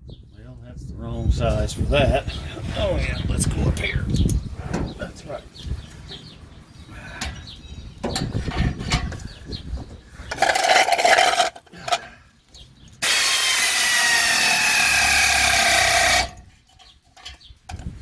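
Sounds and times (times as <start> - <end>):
tools clanking: 8.0 - 9.3, 10.3 - 12.1, 15.1 - 17.9
handheld power tool running: 13.0 - 16.4.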